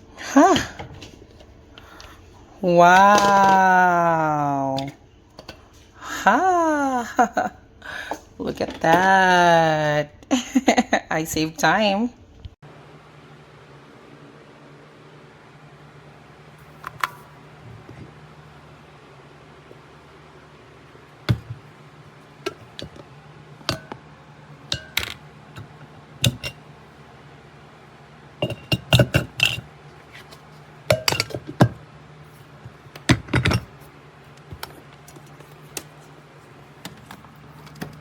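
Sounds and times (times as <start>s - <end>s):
glass and plastic clinking: 26.2s - 26.6s, 28.4s - 29.7s, 30.9s - 31.7s.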